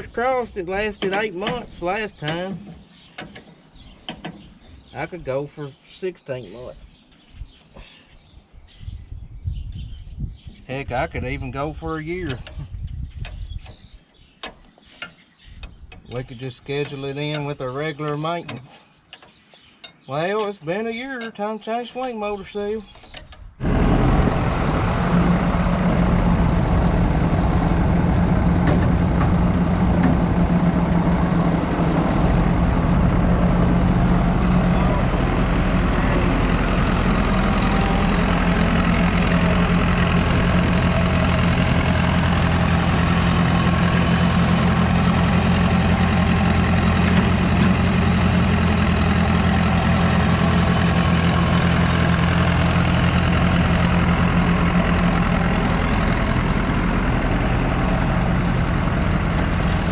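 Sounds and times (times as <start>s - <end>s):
diesel engine running: 23.6s - 59.9s.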